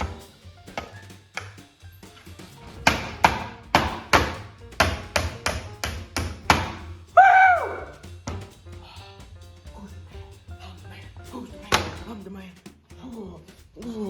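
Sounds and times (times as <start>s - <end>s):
hammer striking nail into plywood: 2.8s - 6.8s.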